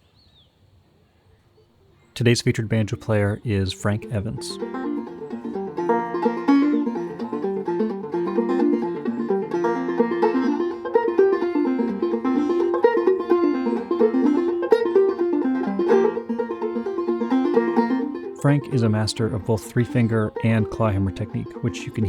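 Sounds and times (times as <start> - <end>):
banjo playing bluegrass tune: 2.5 - 22.0.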